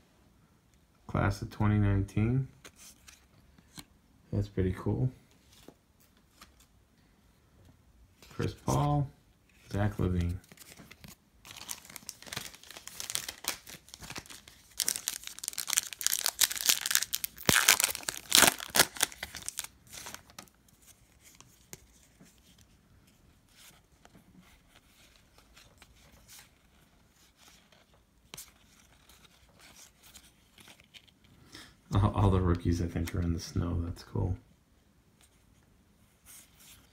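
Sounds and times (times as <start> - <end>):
card pack wrapper tearing: 10.2 - 20.4.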